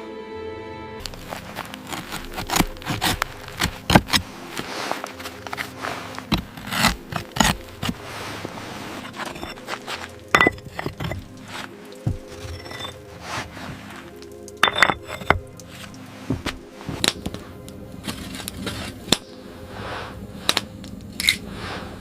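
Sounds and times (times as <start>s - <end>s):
scraping rubbing and clicking: 1.0s - 17.4s.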